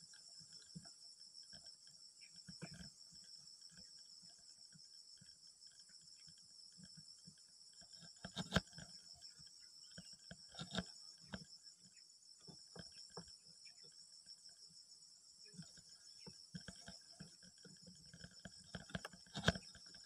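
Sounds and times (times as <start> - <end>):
insect chorus chirring: 0.0 - 20.0
faint taps and knocks: 12.4 - 13.9, 15.5 - 20.0.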